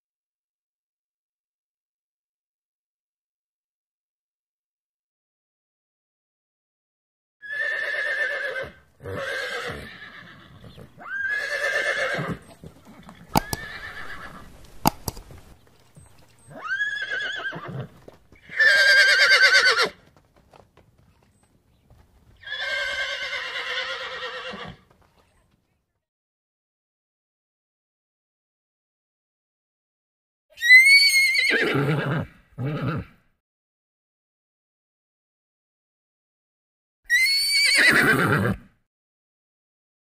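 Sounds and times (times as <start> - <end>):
horse neighing: 7.4 - 20.0, 22.4 - 24.9, 30.6 - 33.2, 37.1 - 38.7.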